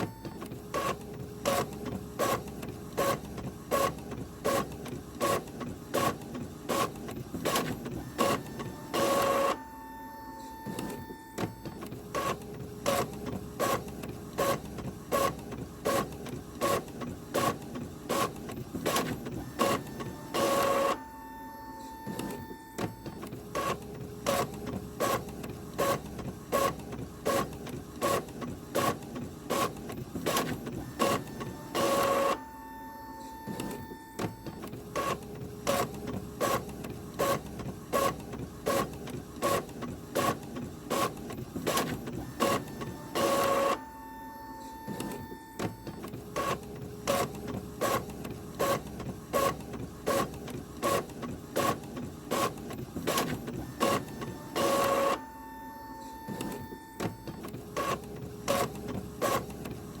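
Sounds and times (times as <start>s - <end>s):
printer motor hum: 0.0s - 60.0s
printer whir: 0.0s - 60.0s
printer clicking: 33.2s - 43.9s, 44.6s - 60.0s.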